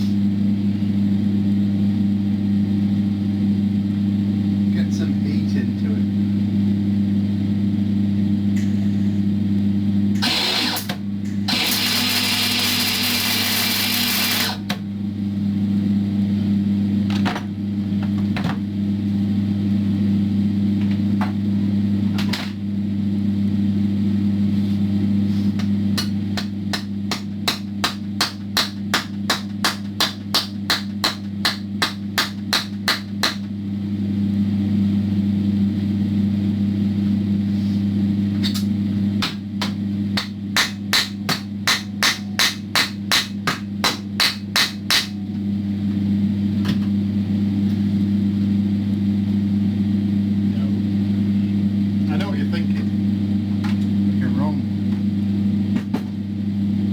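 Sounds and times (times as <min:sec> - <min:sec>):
welder electrical hum: 0:00.0 - 0:56.9
welding arc crackle: 0:11.5 - 0:14.6.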